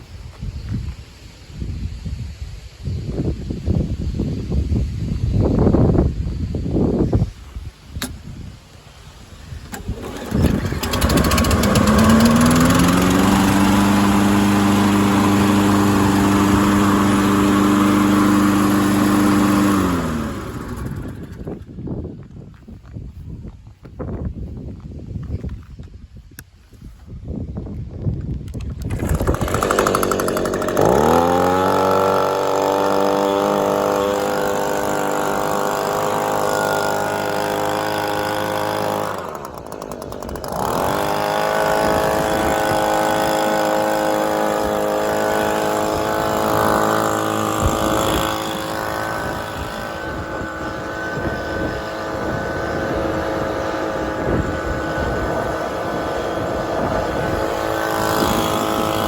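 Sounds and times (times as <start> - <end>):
lawn mower engine running: 9.4 - 21.8, 28.5 - 59.0.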